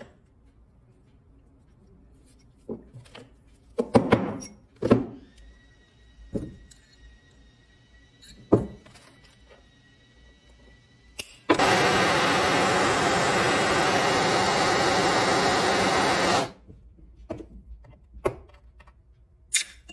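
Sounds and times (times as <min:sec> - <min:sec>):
faint high whine: 0:05.3 - 0:16.6.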